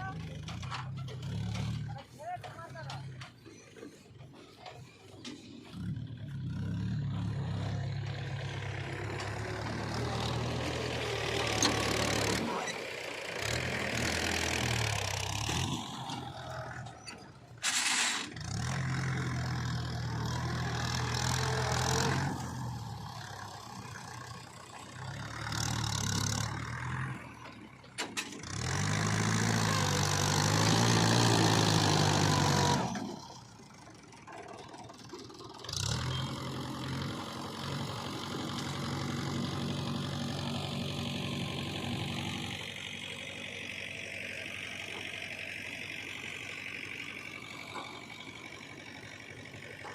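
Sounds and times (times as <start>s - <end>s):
heavy diesel engine: 0.0s - 49.9s.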